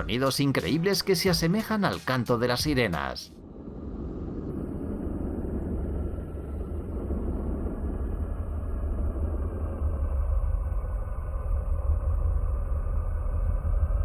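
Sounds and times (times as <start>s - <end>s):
deep rumbling roar: 3.4s - 14.0s.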